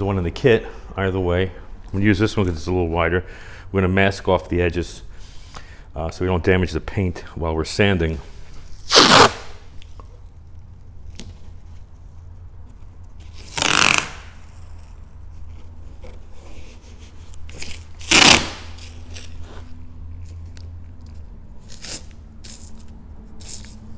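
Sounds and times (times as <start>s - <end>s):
tape rubbing and crinkling: 8.4s - 23.9s
masking tape ripping: 8.8s - 10.0s, 13.2s - 15.0s, 17.5s - 19.6s, 21.6s - 23.8s.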